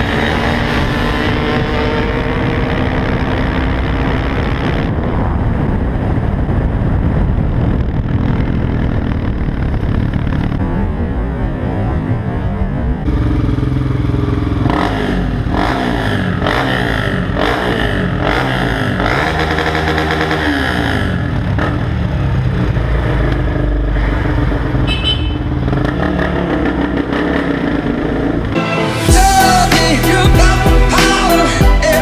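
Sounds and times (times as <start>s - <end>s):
dirt bike engine revving: 0.0s - 5.0s, 13.1s - 21.9s.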